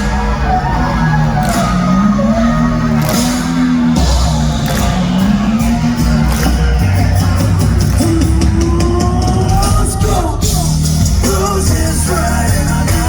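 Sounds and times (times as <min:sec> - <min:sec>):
live rock band playing: 0:00.0 - 0:13.0.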